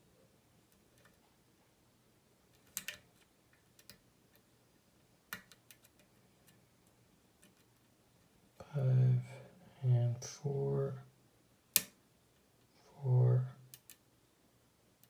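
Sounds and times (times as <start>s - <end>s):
lock pick clicking: 11.8s - 12.0s.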